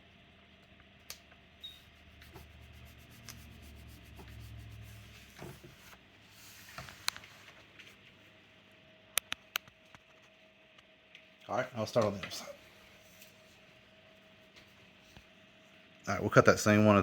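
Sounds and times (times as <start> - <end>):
hands rubbing vinyl: 2.0 - 7.2.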